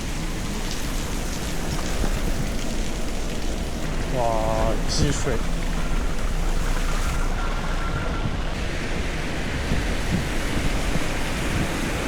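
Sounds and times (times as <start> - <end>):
wind on microphone: 5.9 - 12.0.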